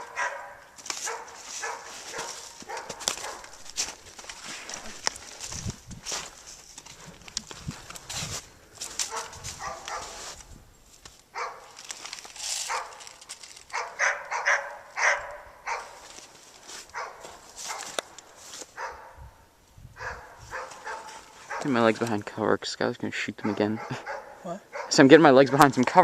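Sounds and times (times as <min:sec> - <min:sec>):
dogs barking: 0:00.0 - 0:03.6, 0:09.0 - 0:10.2, 0:11.3 - 0:11.8, 0:12.7 - 0:13.0, 0:13.7 - 0:16.1, 0:16.8 - 0:18.0, 0:18.7 - 0:19.3, 0:20.0 - 0:21.8, 0:23.4 - 0:25.7.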